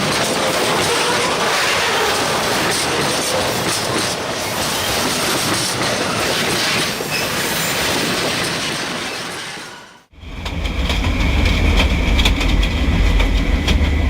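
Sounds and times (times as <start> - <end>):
train wheels rattling on track: 0.0 - 14.0.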